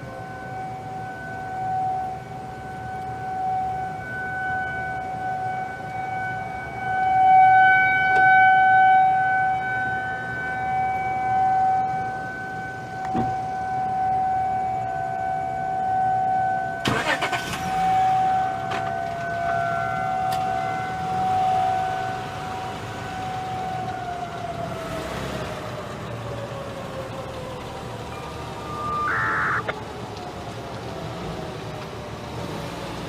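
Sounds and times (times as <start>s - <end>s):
outdoor warning sirens: 0.0s - 33.0s
rushing noise burst: 28.4s - 29.7s.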